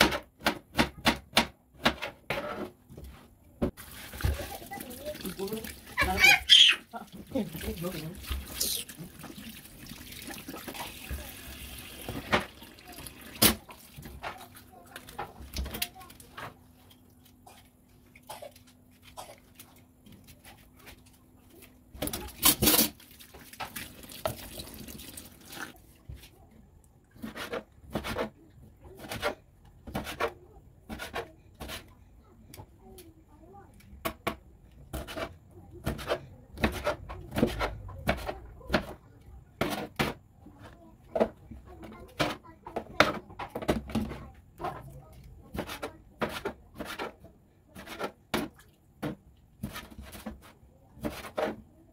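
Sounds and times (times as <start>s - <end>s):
tap water running into sink: 3.8s - 6.4s, 7.1s - 14.2s, 22.8s - 25.8s.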